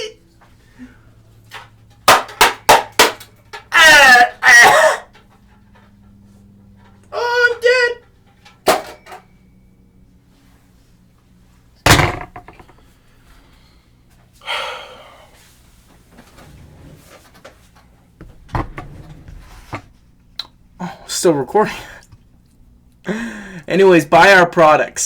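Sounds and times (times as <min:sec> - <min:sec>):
loud bangs and knocks: 0:11.9 - 0:12.7.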